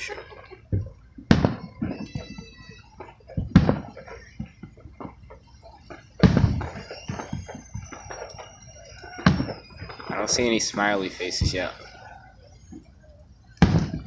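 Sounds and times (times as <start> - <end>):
fireworks booming: 0.0 - 14.0
fireworks popping: 0.0 - 14.0.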